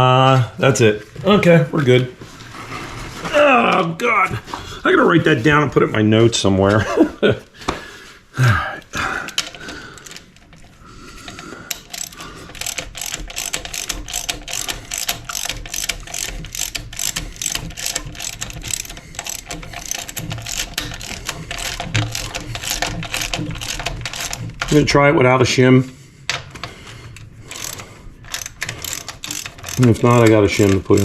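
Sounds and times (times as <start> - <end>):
ratchet wrench clicking rapidly: 11.7 - 24.9, 27.5 - 31.0.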